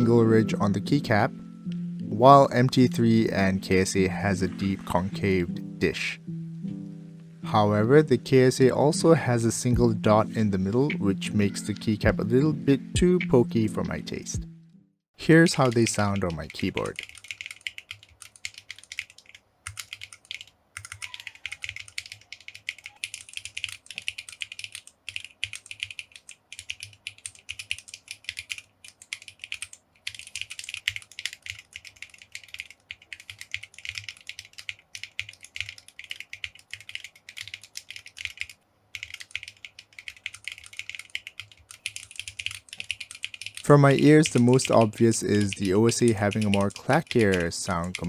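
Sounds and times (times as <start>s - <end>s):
mechanical keyboard typing: 15.5s - 48.0s.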